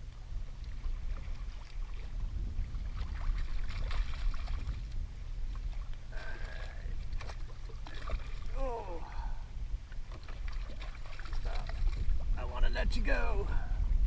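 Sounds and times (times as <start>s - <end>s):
water sloshing against kayak hull: 0.0s - 12.5s
wind rumbling on microphone: 0.0s - 14.0s
small splashes: 0.6s - 2.1s, 2.7s - 9.3s, 9.9s - 12.2s.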